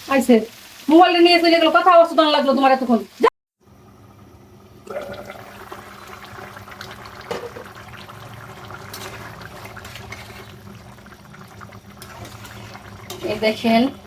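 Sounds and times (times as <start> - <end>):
curry bubbling in a pot: 3.6 - 14.0.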